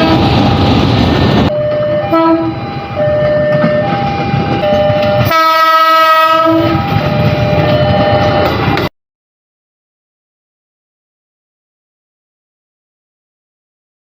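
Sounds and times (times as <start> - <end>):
electric train horn blasts: 0.0 - 0.4, 1.6 - 3.9, 4.6 - 8.5
train rumble: 0.0 - 8.9.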